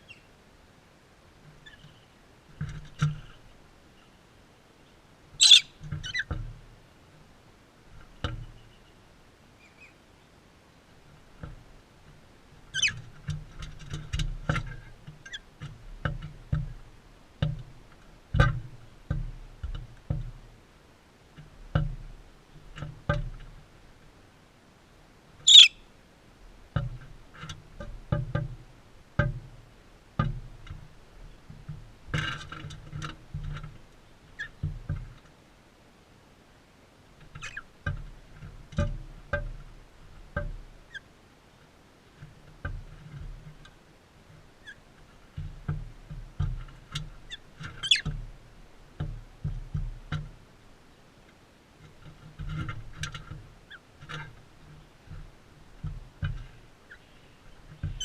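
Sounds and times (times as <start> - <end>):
parrot calls: 5.4 - 6.2, 25.5 - 25.8
beaks and feet tapping feeder: 5.4 - 6.7, 11.1 - 20.5, 25.4 - 25.9, 26.7 - 35.3, 37.2 - 41.0, 42.2 - 50.4, 51.3 - 58.0.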